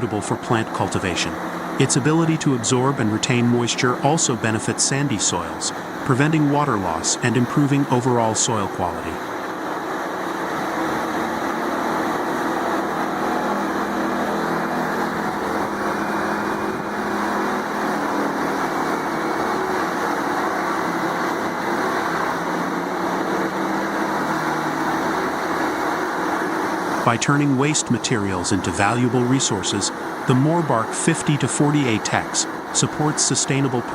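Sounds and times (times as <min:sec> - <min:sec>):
low steady hum: 0:00.0 - 0:33.9
wood chipper running: 0:00.0 - 0:33.9.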